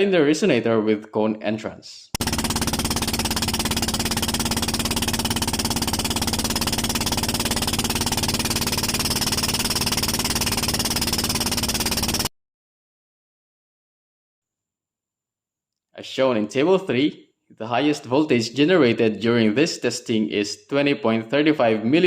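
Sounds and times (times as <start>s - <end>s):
boat engine running: 2.2s - 12.3s.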